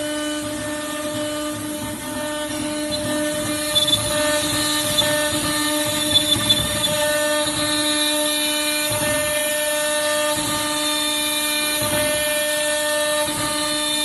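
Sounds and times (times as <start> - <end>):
router spindle whining: 0.0 - 14.0
brief sharp spikes: 2.3 - 7.8.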